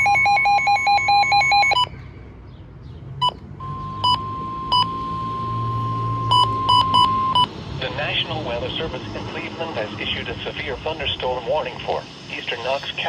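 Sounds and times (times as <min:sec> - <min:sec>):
fast electronic beeping: 0:00.0 - 0:01.9, 0:03.2 - 0:07.5
steady radio alert tone: 0:03.6 - 0:13.0.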